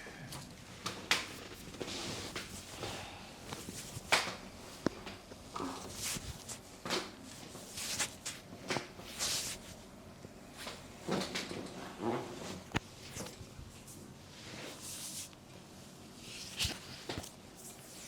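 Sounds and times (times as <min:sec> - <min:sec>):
rustling of hands and clothing: 0:00.2 - 0:18.0.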